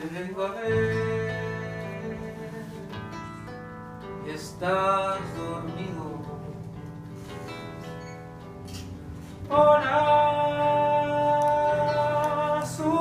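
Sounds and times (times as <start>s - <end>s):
person singing: 0.0s - 3.3s, 4.2s - 7.2s, 9.4s - 13.0s
acoustic guitar: 0.0s - 13.0s.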